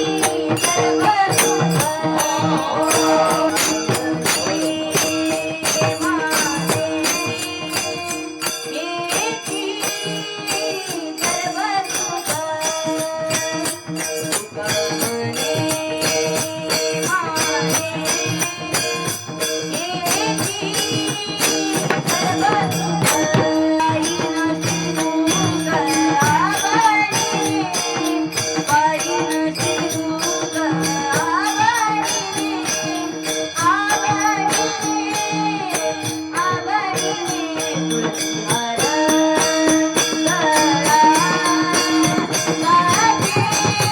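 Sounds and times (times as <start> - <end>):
steady held drone: 0.0 - 12.8
man singing devotional song: 0.0 - 43.9
small jingling cymbals: 0.0 - 43.9.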